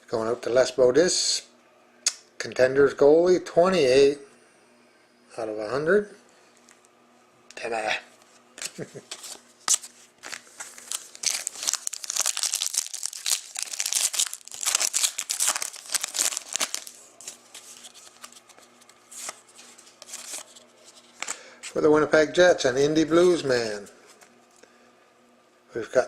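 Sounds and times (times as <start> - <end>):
cards being handled: 8.6 - 21.8
wrapper tearing and crinkling: 9.1 - 20.6.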